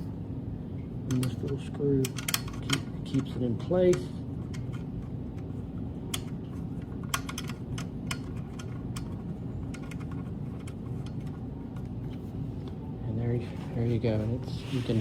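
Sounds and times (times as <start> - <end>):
steady low hum: 0.0 - 15.0
metal hardware clicks and taps: 1.1 - 5.5, 6.1 - 11.9.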